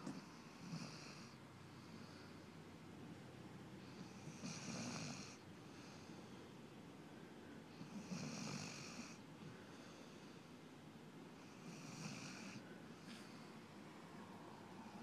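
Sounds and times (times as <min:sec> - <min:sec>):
puppy snoring faintly: 0:00.0 - 0:02.4, 0:03.8 - 0:06.3, 0:07.7 - 0:10.4, 0:11.4 - 0:13.5.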